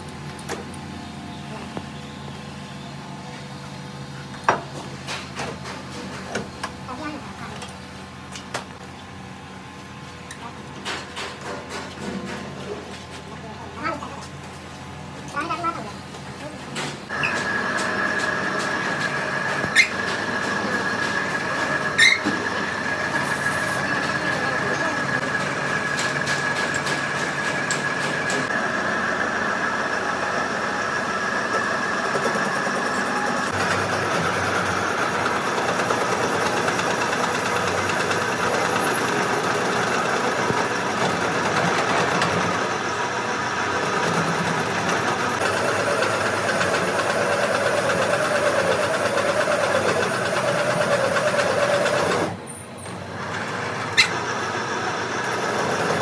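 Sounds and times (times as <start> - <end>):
heavy machinery whining: 17.1 - 56.0.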